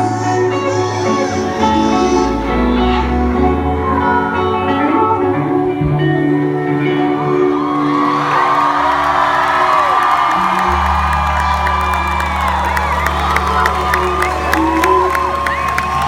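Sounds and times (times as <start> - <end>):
person singing: 0.0 - 16.0
crowd whooping and cheering: 6.8 - 16.0.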